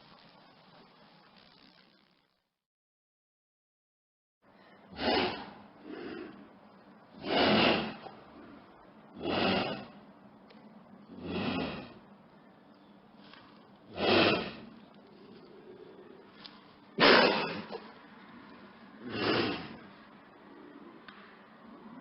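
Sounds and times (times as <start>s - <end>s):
animal huffing: 4.9s - 10.1s, 11.1s - 12.1s, 13.8s - 18.0s, 19.0s - 21.0s.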